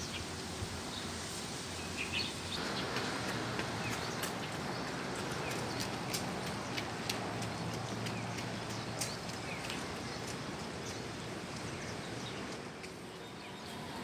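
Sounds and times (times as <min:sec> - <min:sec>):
outdoor background hiss: 0:00.0 - 0:14.0
bird ticks and chirps: 0:02.1 - 0:13.8.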